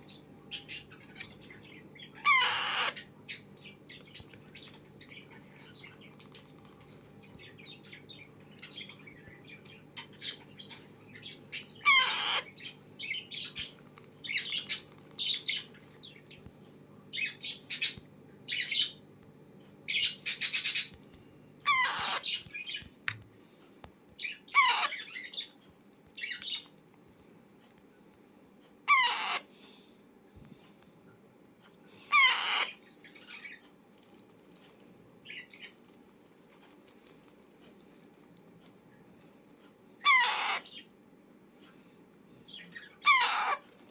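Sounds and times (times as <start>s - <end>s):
steady low hum: 0.0s - 43.9s
parakeet chick squawking: 2.1s - 3.4s, 11.5s - 15.6s, 21.6s - 22.5s, 24.2s - 25.3s, 28.8s - 29.5s, 32.1s - 32.8s, 40.0s - 40.8s, 43.0s - 43.6s.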